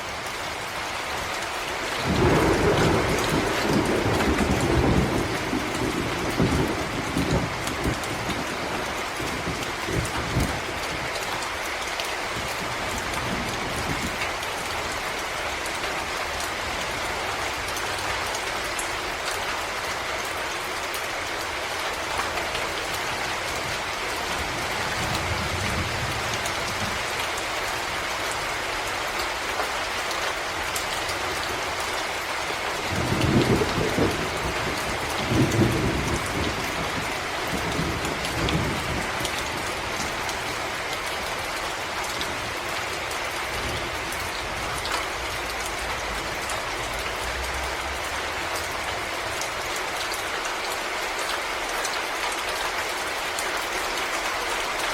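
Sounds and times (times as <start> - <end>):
rain on foliage: 0.0 - 54.9
low thunder rumbling: 2.0 - 11.1, 23.5 - 27.2, 32.8 - 49.8.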